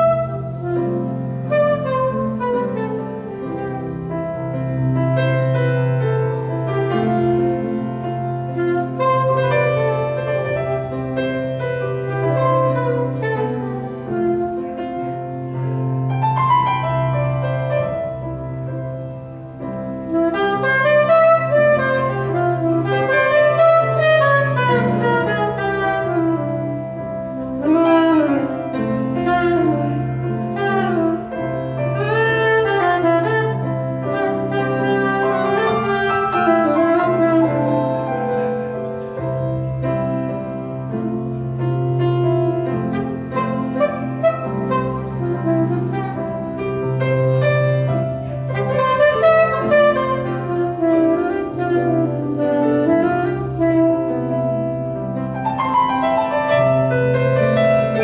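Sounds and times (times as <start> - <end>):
piano accompaniment: 0.0 - 58.0
saxophone improvising: 19.9 - 38.8, 40.9 - 54.8.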